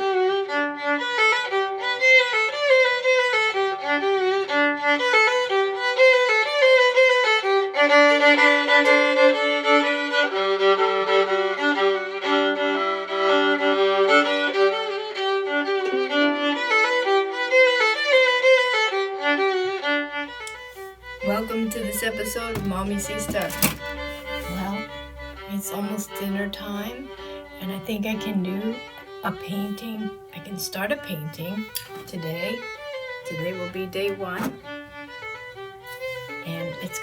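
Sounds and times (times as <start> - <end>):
violin melody: 0.0 - 37.0
deep held accompaniment: 18.3 - 37.0.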